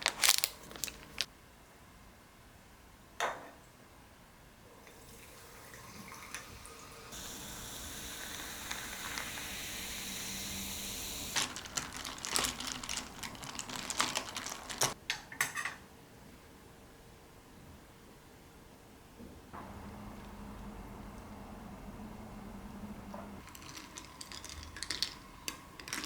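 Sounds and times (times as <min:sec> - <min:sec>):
tap water running: 0:04.8 - 0:15.0.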